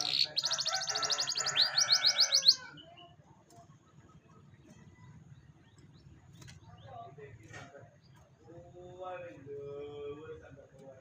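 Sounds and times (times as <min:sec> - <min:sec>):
canary singing trills: 0:00.0 - 0:03.2.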